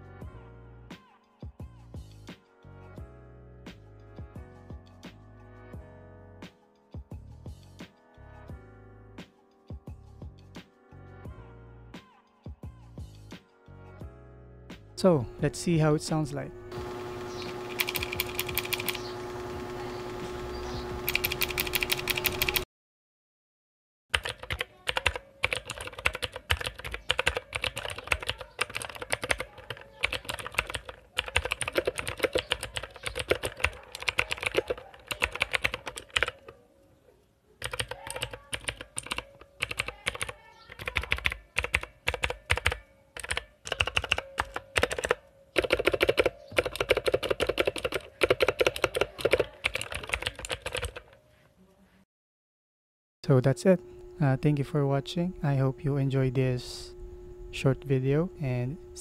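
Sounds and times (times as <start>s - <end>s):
clicky mechanical keyboard typing: 17.3s - 19.1s, 21.0s - 22.6s, 24.1s - 36.6s, 37.6s - 51.2s.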